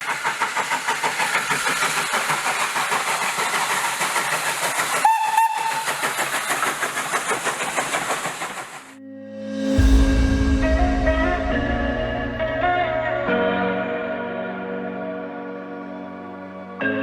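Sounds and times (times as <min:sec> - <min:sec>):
loud steam hiss: 0:00.0 - 0:09.0
steam locomotive chugging: 0:00.0 - 0:09.0
train whistle blast: 0:05.0 - 0:06.2.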